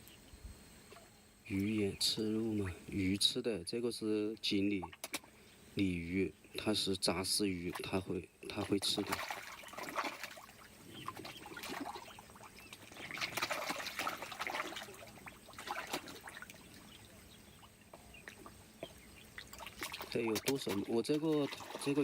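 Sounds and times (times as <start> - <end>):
pond water splashing: 0.9 - 2.7, 4.7 - 5.9, 7.4 - 22.0.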